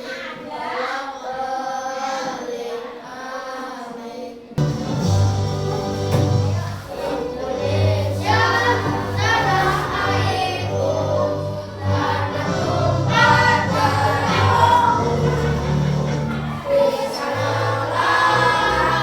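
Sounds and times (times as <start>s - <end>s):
group of voices singing: 0.0s - 19.0s
steady bass accompaniment: 4.6s - 19.0s.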